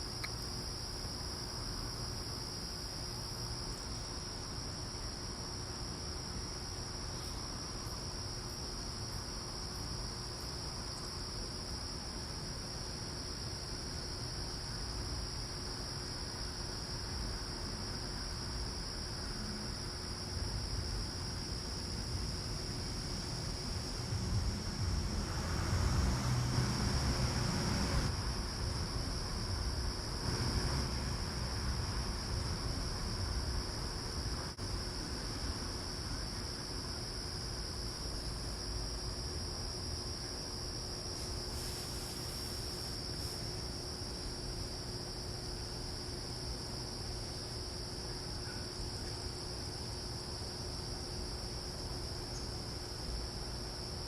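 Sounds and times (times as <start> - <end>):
insects trilling: 0.0 - 54.0
low rumble: 22.8 - 33.7.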